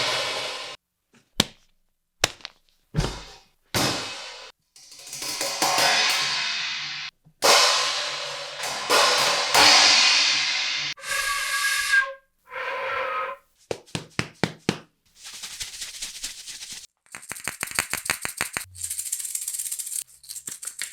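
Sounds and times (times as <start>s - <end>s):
cymbal crashes: 0.0s - 0.8s, 3.8s - 11.5s.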